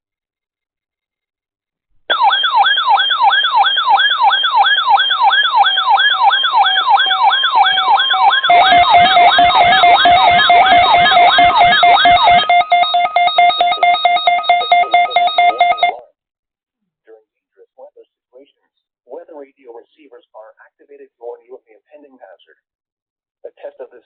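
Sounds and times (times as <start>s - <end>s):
sweeping emergency alert tone: 2.1s - 16.0s.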